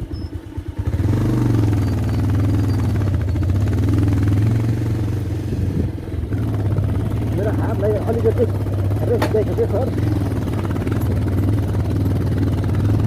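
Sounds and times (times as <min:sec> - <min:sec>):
motorcycle engine: 0:00.0 - 0:13.0.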